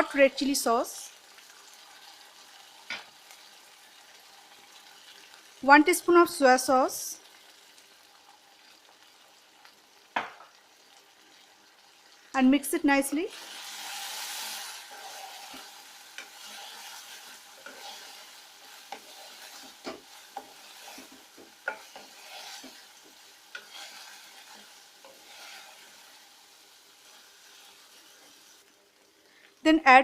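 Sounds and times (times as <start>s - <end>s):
food sizzling in a frying pan: 0.0s - 29.8s
utensil scraping a pan: 13.4s - 26.2s.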